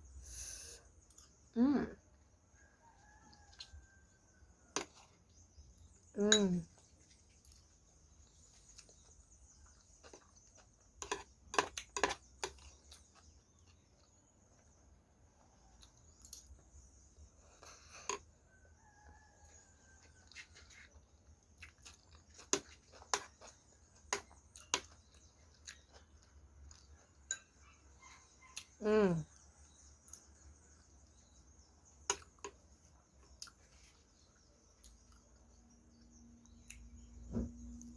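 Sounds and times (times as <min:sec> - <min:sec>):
faint rooster crow: 0:02.4 - 0:05.3, 0:18.1 - 0:20.9, 0:27.4 - 0:28.8
chewing: 0:02.8 - 0:37.1.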